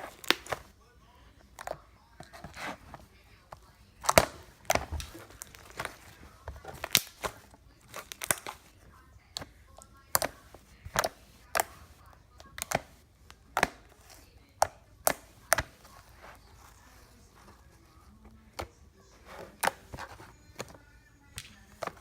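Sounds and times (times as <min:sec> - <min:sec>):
sticky slime popping: 0:00.0 - 0:00.7, 0:04.0 - 0:08.7, 0:09.3 - 0:16.7.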